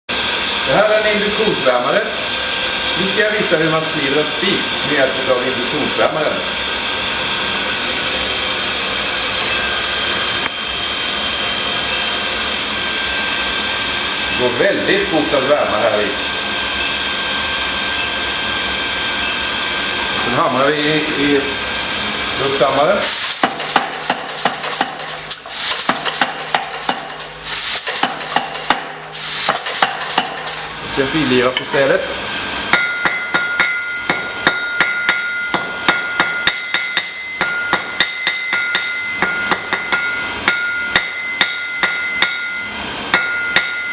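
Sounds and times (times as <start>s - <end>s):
motor hum: 0.1s - 33.4s
induction heater rushing noise: 0.1s - 43.9s
air hammer blows: 20.1s - 43.9s
air hiss: 23.0s - 31.0s.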